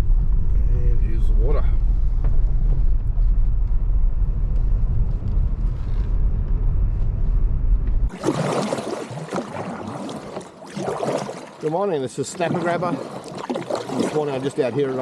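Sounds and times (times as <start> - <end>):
low rumble of vehicle in motion: 0.0 - 8.1
water splashing and sloshing: 8.1 - 15.0.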